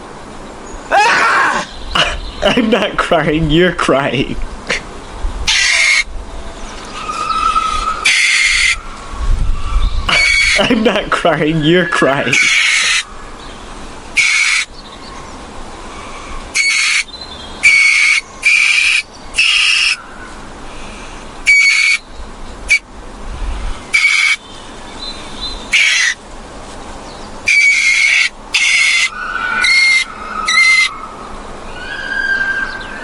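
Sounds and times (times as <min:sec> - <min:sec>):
steady background hiss: 0:00.0 - 0:33.0
shrill animal call: 0:00.9 - 0:01.7, 0:05.5 - 0:06.1, 0:07.0 - 0:09.0, 0:09.6 - 0:10.7, 0:11.8 - 0:13.1, 0:14.1 - 0:14.7, 0:16.0 - 0:20.1, 0:21.4 - 0:22.1, 0:23.9 - 0:24.4, 0:25.7 - 0:26.2, 0:27.5 - 0:33.0.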